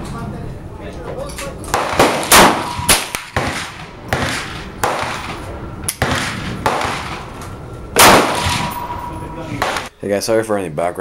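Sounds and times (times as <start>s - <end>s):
rifle shots: 1.7s - 7.4s, 8.0s - 9.9s.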